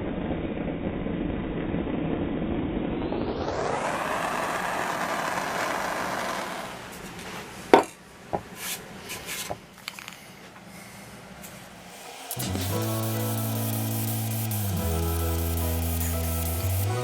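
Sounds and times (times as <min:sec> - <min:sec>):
power sander on wood: 0:03.4 - 0:07.0, 0:11.8 - 0:17.0.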